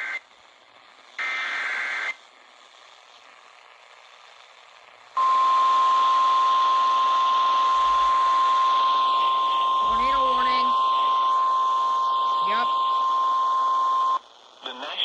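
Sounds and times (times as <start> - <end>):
faint hiss: 0.0 - 15.0
steady single-pitch alarm tone: 5.2 - 14.2
digital data tones: 7.3 - 14.2.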